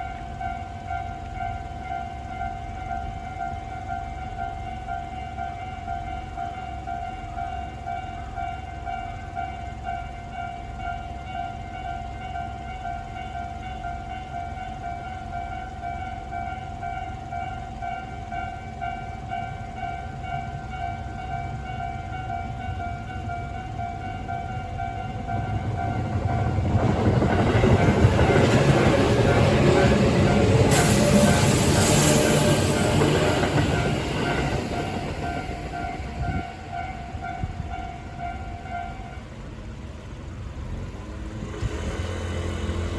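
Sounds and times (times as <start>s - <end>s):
level-crossing alarm ringing: 0.0s - 39.6s
passing train noise: 0.0s - 42.9s
low steady rumble: 34.8s - 41.1s.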